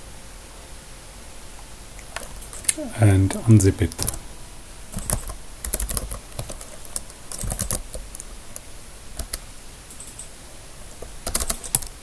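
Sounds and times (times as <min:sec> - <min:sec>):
typing on computer keyboard: 0:05.0 - 0:08.3, 0:09.2 - 0:10.3, 0:11.2 - 0:12.0.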